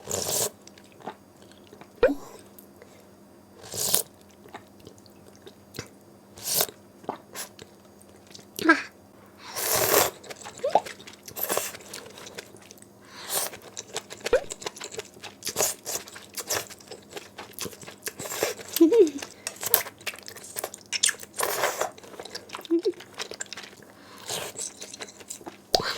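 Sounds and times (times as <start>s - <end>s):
wet mouth sounds: 2.0s - 2.4s, 13.3s - 16.8s, 17.4s - 25.9s
person chewing food: 9.6s - 25.9s.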